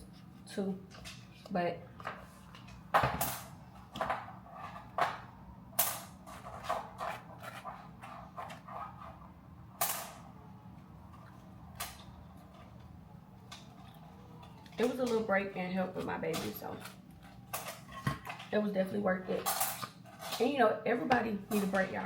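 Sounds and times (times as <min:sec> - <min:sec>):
faint steady hum: 0:00.0 - 0:22.0
kitchen items clacking: 0:13.6 - 0:22.0.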